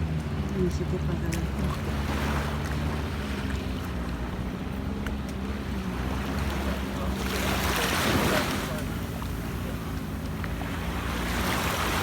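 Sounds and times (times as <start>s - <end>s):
boat engine droning: 0.0s - 12.0s
wind: 0.0s - 12.0s
water noise: 5.8s - 12.0s.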